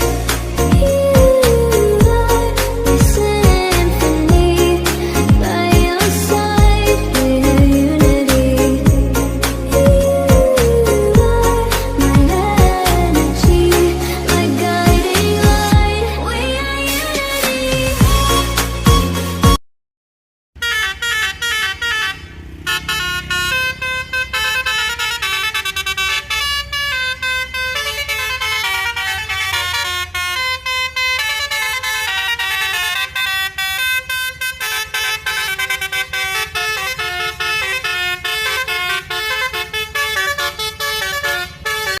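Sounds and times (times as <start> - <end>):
bus horn playing melody: 20.6 - 42.0.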